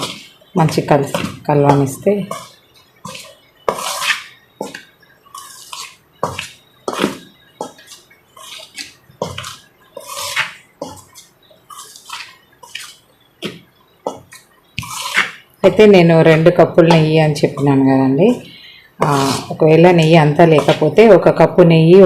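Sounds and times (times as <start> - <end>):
hands rubbing flour in a bowl: 7.8 - 13.1, 14.3 - 18.0, 19.0 - 21.4.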